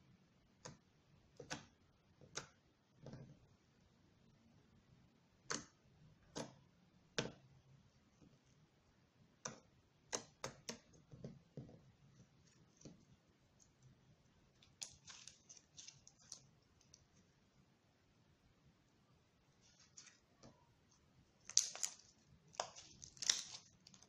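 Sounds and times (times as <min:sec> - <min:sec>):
slime clicking and popping: 0:21.4 - 0:24.0.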